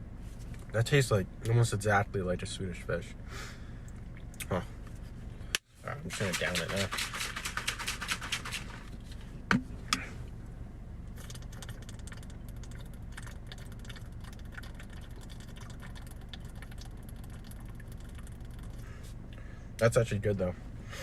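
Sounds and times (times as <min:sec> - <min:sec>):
steady low hum: 0:00.0 - 0:21.0
person gulping a drink: 0:11.1 - 0:18.8.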